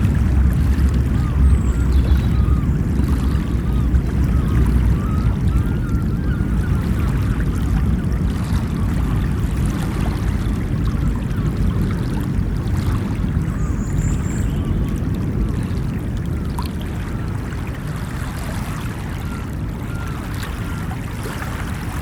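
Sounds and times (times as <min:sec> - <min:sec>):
ocean waves on a beach: 0:00.0 - 0:22.0
wavering bird calls: 0:00.8 - 0:09.2, 0:19.1 - 0:22.0.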